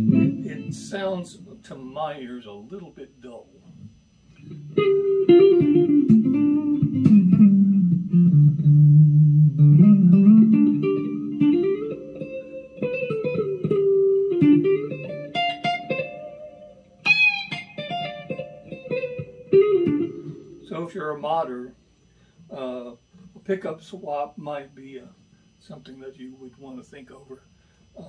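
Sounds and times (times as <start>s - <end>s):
electric guitar lead line: 0.0s - 2.6s, 3.8s - 21.7s.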